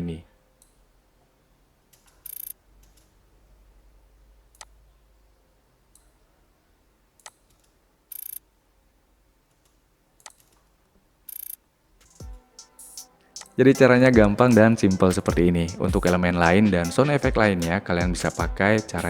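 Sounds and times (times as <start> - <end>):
computer mouse clicking: 2.0 - 3.2, 9.5 - 10.7, 11.3 - 12.2.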